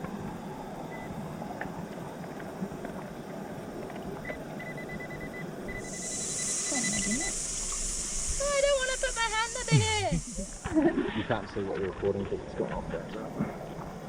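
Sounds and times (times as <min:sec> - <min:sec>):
metal detector beeping: 0:04.3 - 0:10.6
high hiss: 0:04.6 - 0:11.1.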